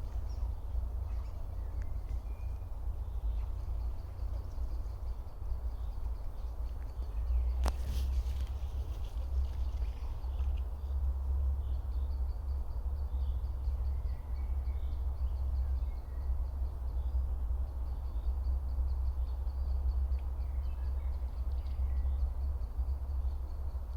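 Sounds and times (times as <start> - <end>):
bird calls: 0.0 - 11.0
low rumble: 0.0 - 12.6.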